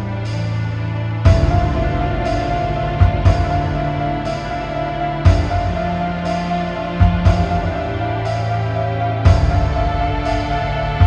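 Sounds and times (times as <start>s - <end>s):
low deep drum hits: 1.3s - 8.2s, 9.3s - 11.0s.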